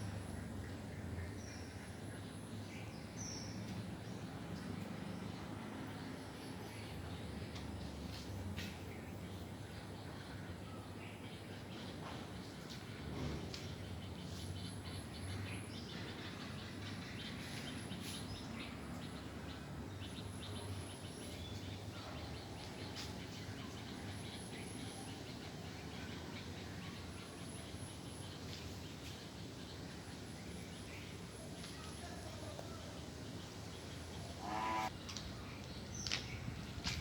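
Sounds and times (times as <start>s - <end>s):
low background noise: 0.0s - 37.0s
birds chirping: 30.1s - 36.5s
insect trilling: 34.4s - 34.9s.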